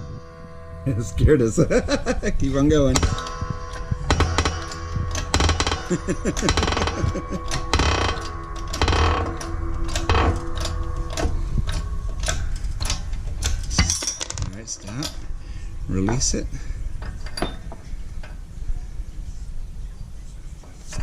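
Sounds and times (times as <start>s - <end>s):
metal knocks: 2.7s - 15.2s.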